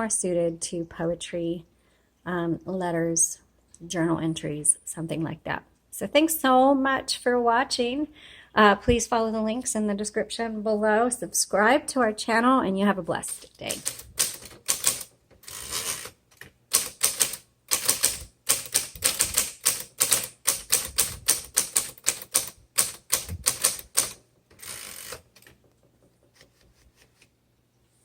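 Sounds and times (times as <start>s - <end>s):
typewriter rasping sound: 13.3s - 25.6s
manual typewriter typing: 13.3s - 26.1s.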